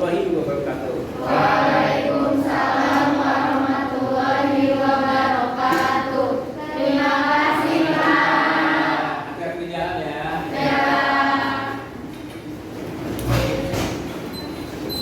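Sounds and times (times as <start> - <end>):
students chanting in unison: 1.2 - 9.4, 10.4 - 12.0.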